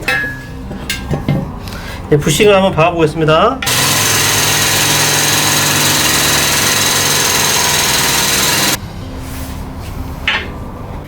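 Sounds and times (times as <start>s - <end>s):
shop press running: 3.7s - 8.8s.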